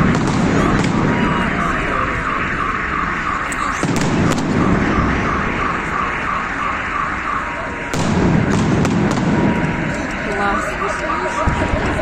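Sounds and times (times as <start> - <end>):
fireworks booming and cracking: 0.0 - 5.8, 7.8 - 12.0
car alarms wailing: 0.0 - 12.0.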